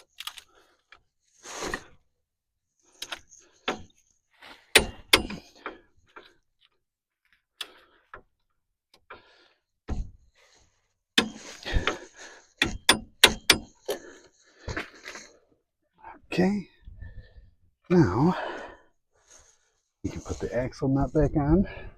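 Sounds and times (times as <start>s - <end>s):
hand tools clicking and knocking: 4.7s - 6.3s, 11.2s - 14.1s.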